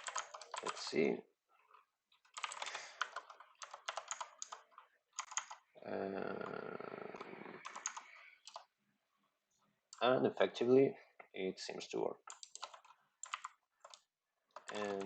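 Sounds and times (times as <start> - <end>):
computer keyboard typing: 0.0 - 1.0, 1.7 - 5.6, 6.4 - 8.7, 12.2 - 15.0.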